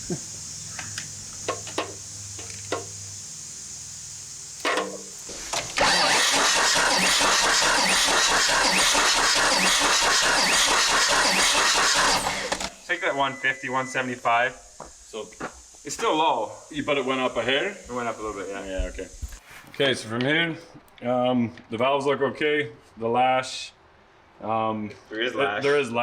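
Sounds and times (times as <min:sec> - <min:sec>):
starter cranking diesel engine: 0:05.7 - 0:12.8.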